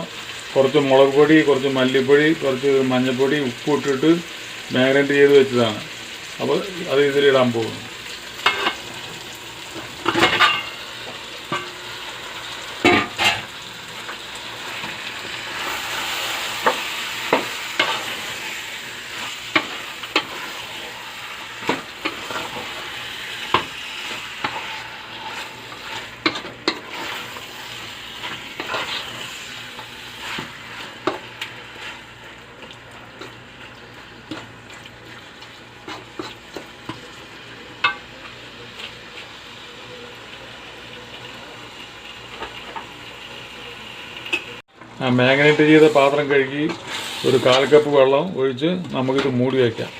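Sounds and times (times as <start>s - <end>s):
chicken sizzling in a pan: 0.0s - 49.9s
spatula scraping a pan: 14.6s - 32.2s.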